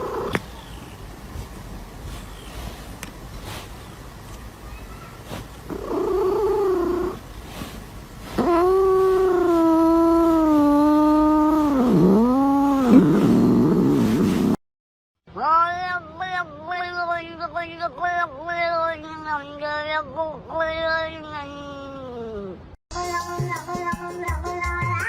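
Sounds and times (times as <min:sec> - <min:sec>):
cat yowling: 0:05.1 - 0:07.2, 0:08.3 - 0:14.0.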